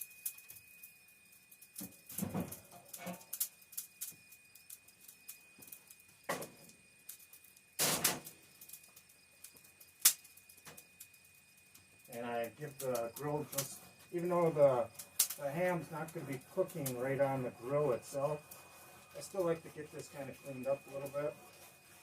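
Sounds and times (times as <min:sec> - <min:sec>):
knocks and clunks of grill parts: 0:01.8 - 0:03.3, 0:06.2 - 0:06.7, 0:07.8 - 0:08.4.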